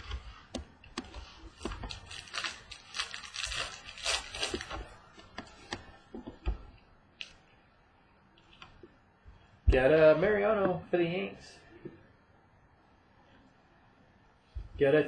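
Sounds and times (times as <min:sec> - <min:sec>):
cards rustling and clicking: 0:00.0 - 0:06.6
wrapper tearing and crinkling: 0:01.5 - 0:05.0.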